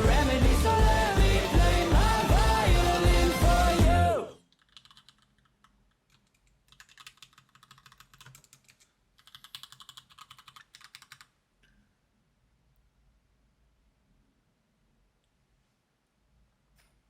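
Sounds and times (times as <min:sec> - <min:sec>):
fast mechanical keyboard typing: 0:04.6 - 0:11.3.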